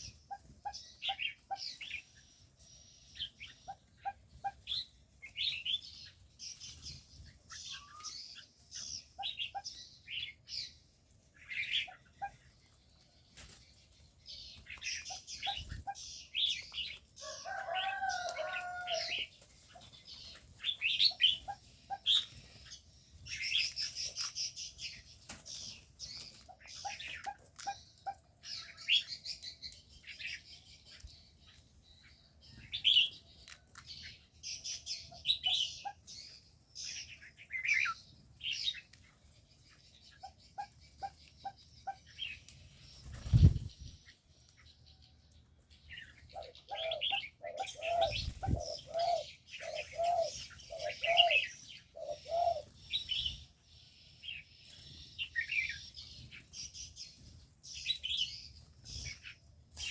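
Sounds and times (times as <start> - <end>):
small birds chirping: 0.0 - 59.9
wing flutters: 42.8 - 44.0.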